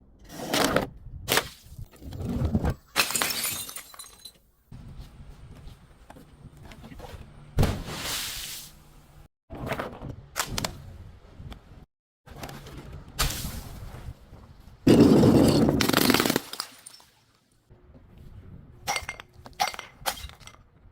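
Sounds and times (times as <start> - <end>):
glass bottles smashing: 2.9 - 4.4, 14.9 - 17.1.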